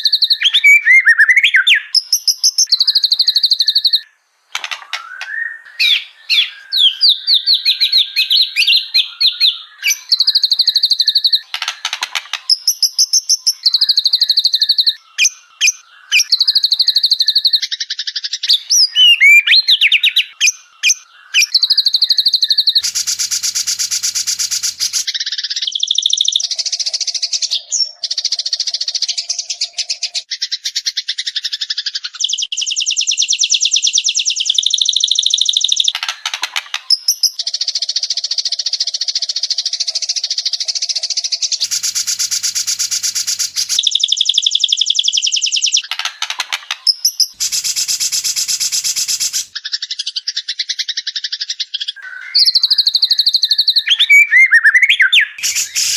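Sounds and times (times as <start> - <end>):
bird song with whistled trills: 0.0 - 46.0, 46.7 - 55.9.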